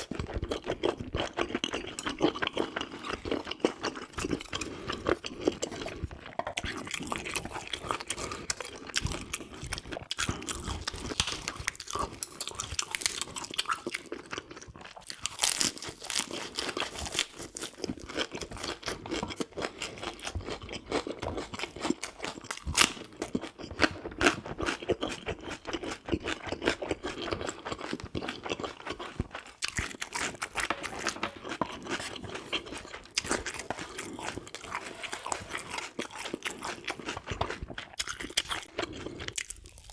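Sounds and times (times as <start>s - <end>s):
person chewing crunchy food: 0.0s - 39.9s.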